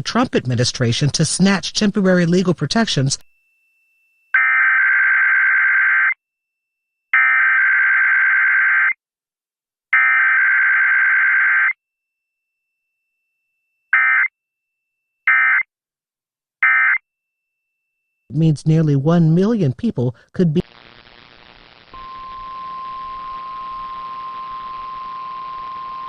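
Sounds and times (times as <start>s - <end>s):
warbling digital data tones: 22.0s - 26.0s.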